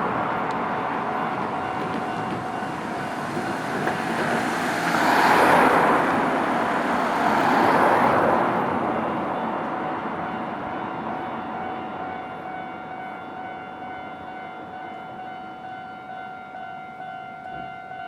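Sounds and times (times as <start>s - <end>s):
road traffic passing: 0.0s - 12.4s.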